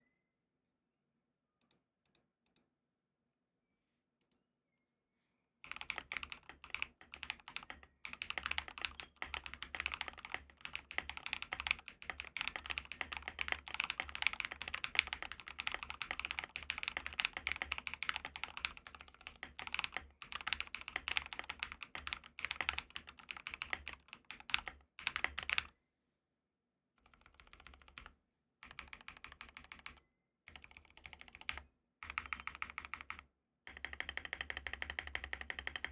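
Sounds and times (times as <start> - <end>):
mechanical keyboard typing: 5.7 - 25.7, 27.0 - 35.9.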